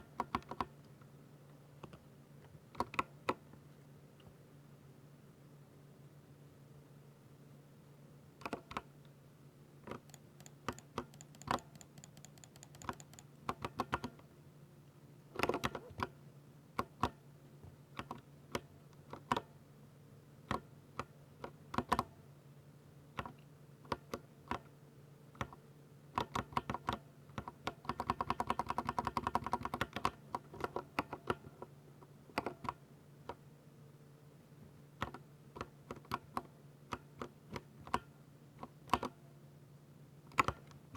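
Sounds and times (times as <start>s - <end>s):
mechanical keyboard typing: 9.9s - 14.2s, 15.4s - 16.1s, 26.2s - 31.4s, 40.3s - 40.8s.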